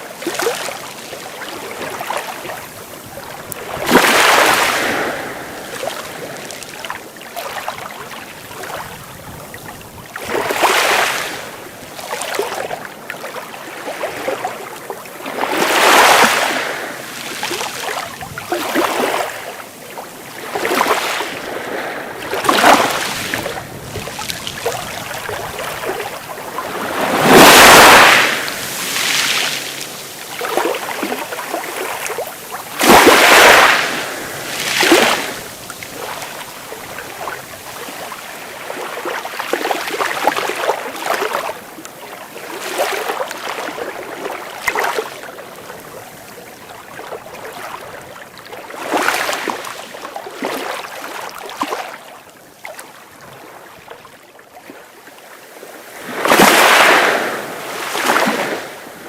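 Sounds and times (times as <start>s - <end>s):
sea waves breaking: 0.0s - 52.1s, 54.6s - 59.0s.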